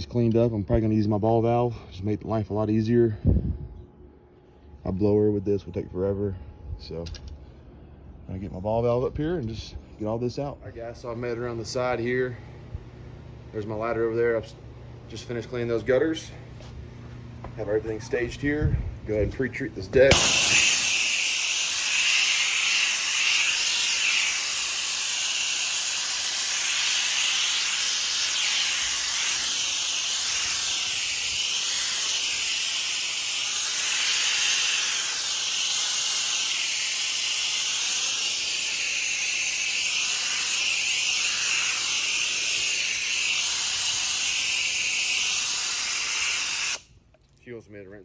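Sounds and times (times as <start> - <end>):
spray nozzle hissing: 20.0 - 46.9.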